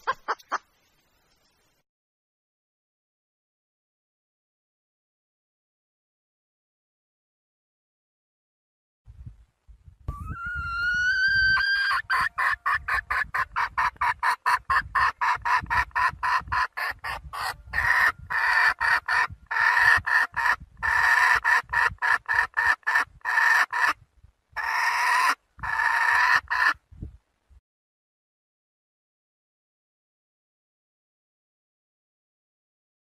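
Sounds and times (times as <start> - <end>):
hen calling and clucking: 0.0 - 0.8, 10.1 - 24.0, 24.6 - 26.8.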